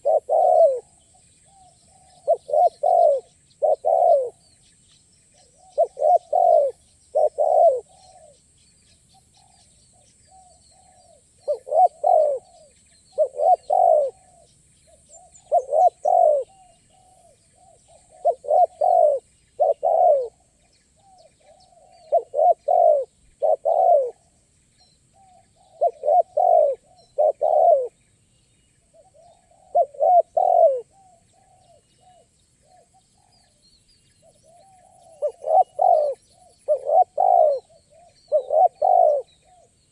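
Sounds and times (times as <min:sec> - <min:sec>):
doves cooing: 0:00.0 - 0:01.0, 0:01.8 - 0:04.4, 0:05.6 - 0:08.4, 0:10.5 - 0:14.5, 0:15.1 - 0:20.6, 0:21.4 - 0:24.3, 0:25.2 - 0:27.9, 0:29.0 - 0:32.2, 0:34.5 - 0:39.7.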